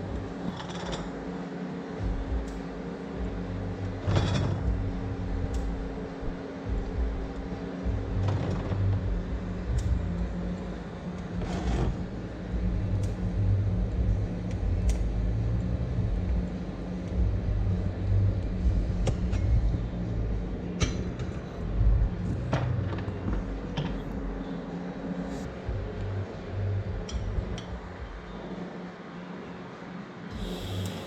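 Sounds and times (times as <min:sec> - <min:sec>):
vehicle engine rumble: 0:00.0 - 0:28.7.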